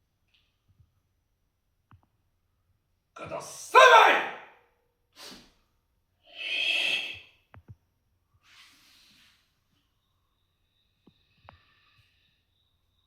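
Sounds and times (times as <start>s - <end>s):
sharp forceful breaths: 6.2s - 7.5s, 10.6s - 12.9s.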